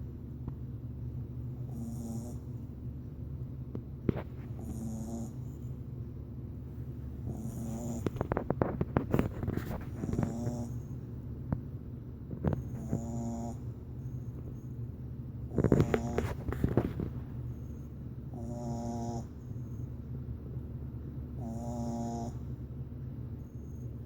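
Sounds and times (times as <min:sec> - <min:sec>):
puppy snoring: 0:01.5 - 0:02.7, 0:04.0 - 0:05.8, 0:07.0 - 0:11.1, 0:12.3 - 0:14.6, 0:15.4 - 0:19.9, 0:21.3 - 0:22.6.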